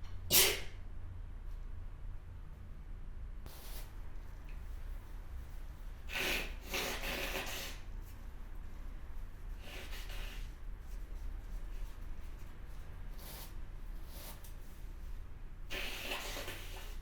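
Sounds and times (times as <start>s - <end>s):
person sneezing: 0.3s - 0.8s.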